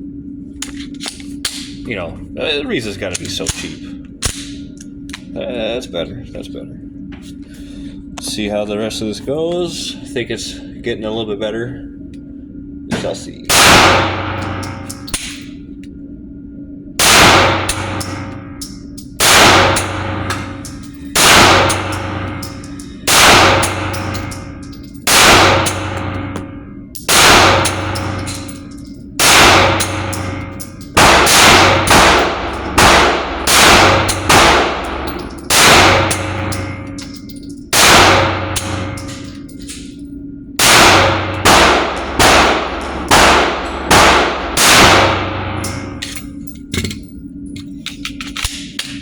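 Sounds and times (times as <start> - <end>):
pistol shots with ringing echo: 13.0 - 15.4, 17.0 - 18.4, 19.2 - 39.3, 40.6 - 46.1.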